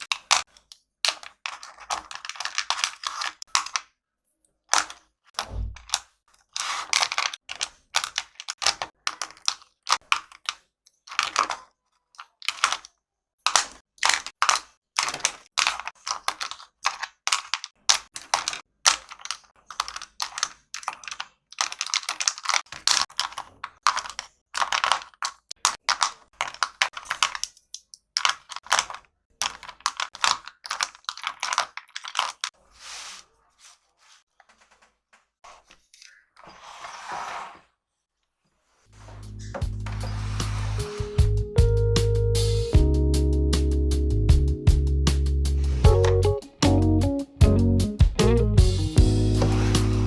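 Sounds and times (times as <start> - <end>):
plastic markers clicking together: 0.0 - 3.9, 4.7 - 32.5.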